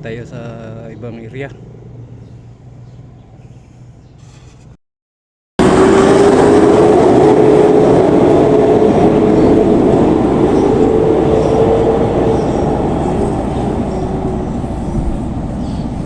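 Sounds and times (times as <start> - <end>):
road noise rumbling: 0.0 - 4.2, 5.6 - 16.0
vehicle engine hum: 5.6 - 16.0.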